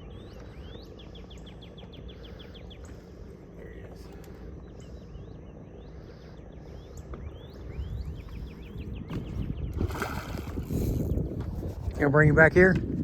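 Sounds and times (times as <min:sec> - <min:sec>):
birds chirping: 0:00.0 - 0:11.3
wind noise on microphone: 0:07.2 - 0:13.0.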